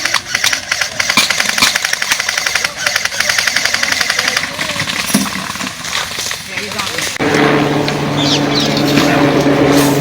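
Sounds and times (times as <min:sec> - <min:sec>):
airsoft gun firing bursts: 0:00.0 - 0:04.6.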